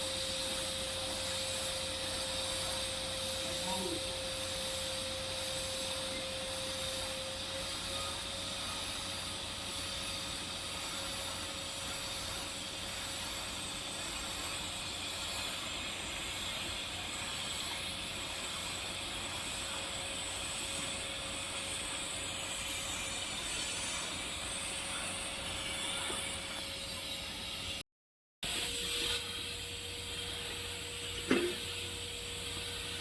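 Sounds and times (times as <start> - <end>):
thin steady tone: 0.0 - 27.8
welding arc hissing: 0.0 - 27.8, 28.4 - 33.0.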